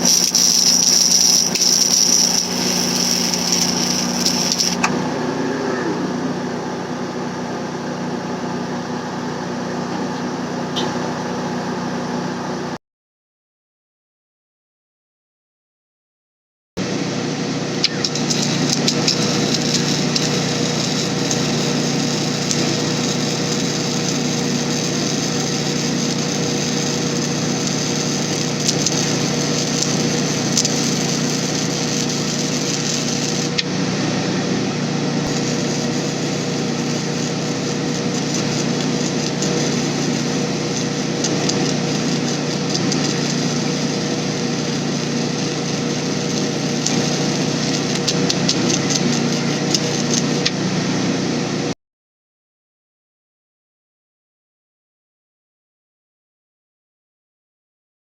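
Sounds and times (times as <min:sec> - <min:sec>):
high hiss: 0:00.0 - 0:05.1, 0:35.2 - 0:50.3
small engine running: 0:00.0 - 0:12.8, 0:16.8 - 0:51.7.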